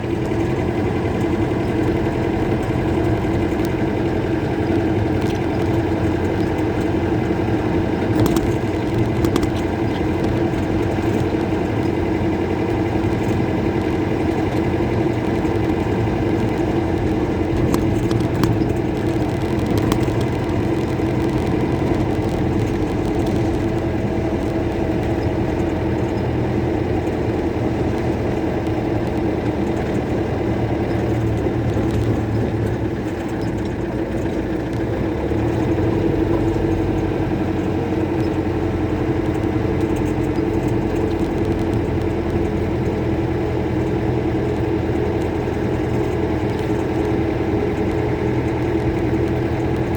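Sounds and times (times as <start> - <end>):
diesel engine running: 0.0 - 49.9.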